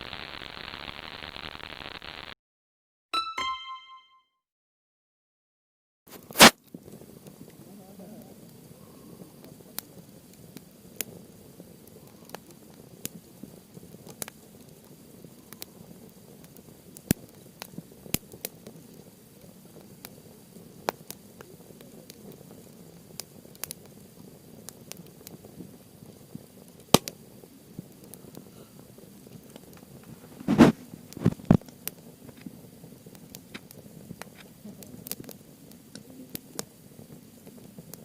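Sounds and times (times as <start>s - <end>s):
campfire crackling and popping: 0.0s - 2.4s, 6.3s - 38.0s
flames rustling: 6.2s - 38.0s.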